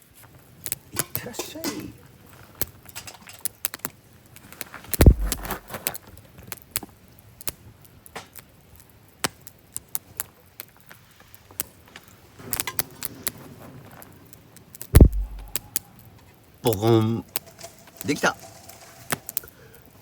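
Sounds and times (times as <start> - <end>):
campfire crackling and popping: 0.0 - 20.0
heavy low thump: 5.0 - 5.6, 15.0 - 15.7.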